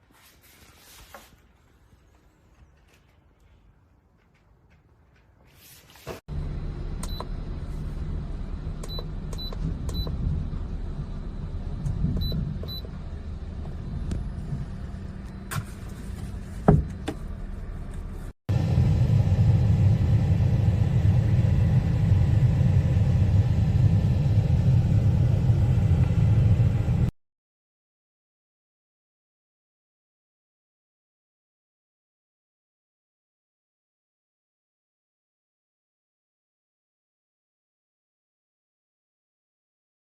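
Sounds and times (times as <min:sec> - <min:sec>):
low rumble: 0:06.3 - 0:27.1.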